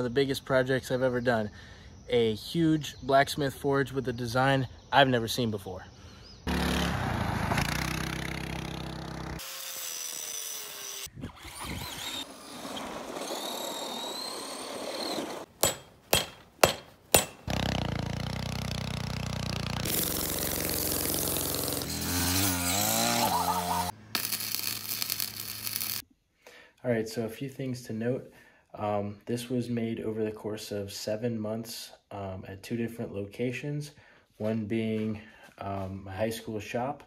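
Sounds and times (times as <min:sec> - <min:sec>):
power tools running: 0:07.6 - 0:16.7, 0:17.3 - 0:26.0
sharp metal strikes: 0:15.6 - 0:17.5.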